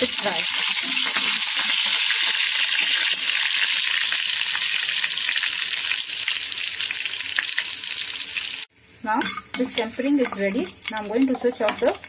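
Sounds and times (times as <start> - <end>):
crackles and pops of frying: 0.0 - 12.0
spices sizzling in hot oil: 0.0 - 12.0.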